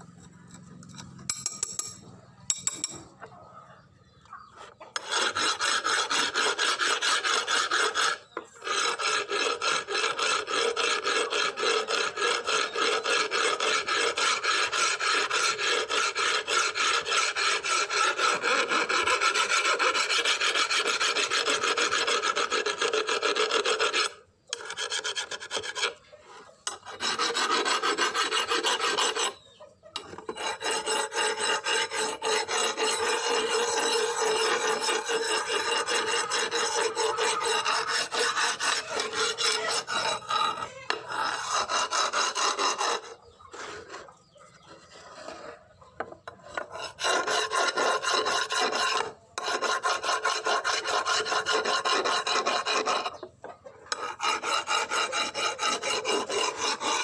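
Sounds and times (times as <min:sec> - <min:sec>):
file rasping on a surface: 0:00.3 - 0:03.1, 0:04.7 - 0:57.0.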